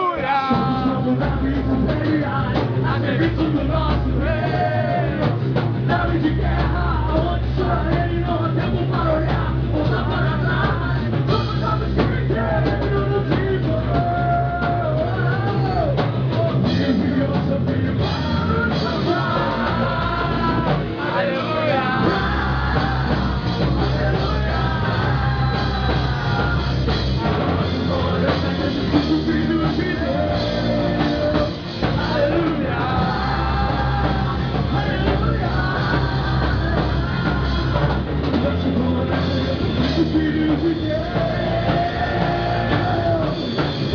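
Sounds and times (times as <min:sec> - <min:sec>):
drum kit: 0:00.0 - 0:43.9
lead vocal singing: 0:00.0 - 0:43.9
rock band playing: 0:00.0 - 0:43.9.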